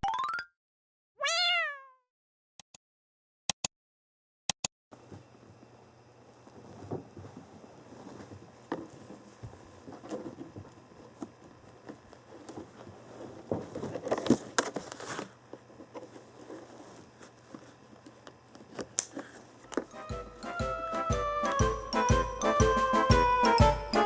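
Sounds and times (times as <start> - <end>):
rustling from handling: 5.0 - 20.6.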